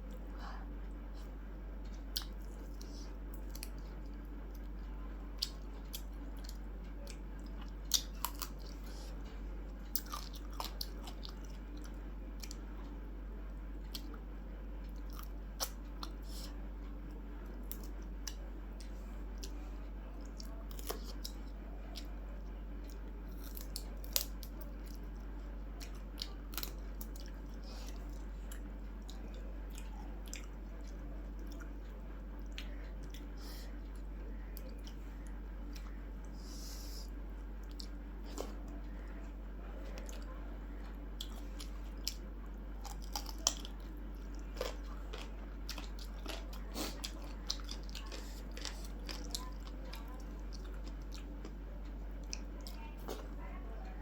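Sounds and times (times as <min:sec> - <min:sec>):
person chewing and biting: 0:05.4 - 0:09.2, 0:09.8 - 0:12.6, 0:22.8 - 0:31.8, 0:41.1 - 0:51.6.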